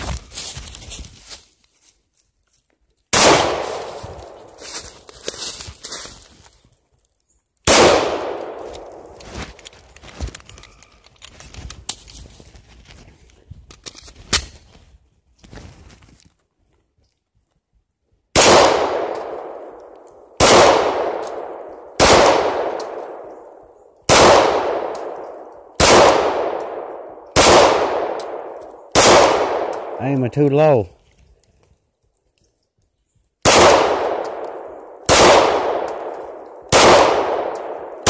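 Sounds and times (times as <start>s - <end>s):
pistol shots ringing: 20.4s - 23.3s, 24.1s - 30.0s, 33.5s - 38.0s.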